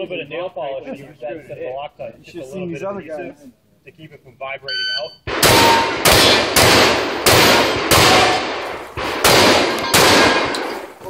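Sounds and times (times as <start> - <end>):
shotgun shots: 5.3 - 11.0.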